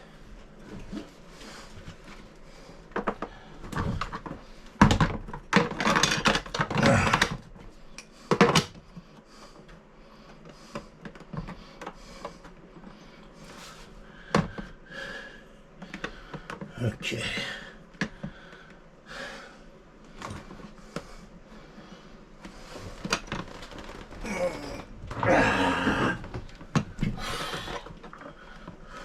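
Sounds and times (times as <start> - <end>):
knocks and rattling clatter: 2.9 - 7.6.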